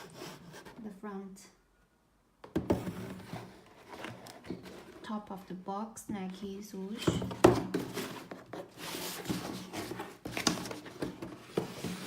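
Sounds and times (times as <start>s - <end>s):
cardboard box rustling: 7.4s - 12.0s.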